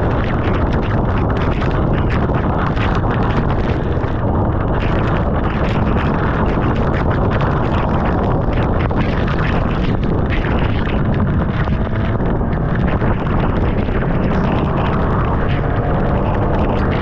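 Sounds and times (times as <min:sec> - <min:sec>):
wind rushing over microphone: 0:00.0 - 0:17.0
motorcycle engine: 0:09.7 - 0:17.0.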